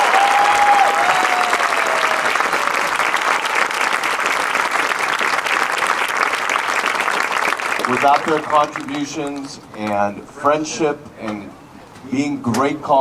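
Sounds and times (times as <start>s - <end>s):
audience applauding: 0.0s - 10.1s.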